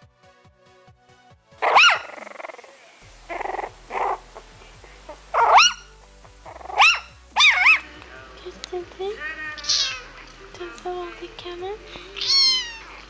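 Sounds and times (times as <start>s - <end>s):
animal high-pitched calls: 1.6s - 2.7s, 3.3s - 4.4s, 5.1s - 5.9s, 6.5s - 7.8s, 9.2s - 10.1s, 12.2s - 13.0s.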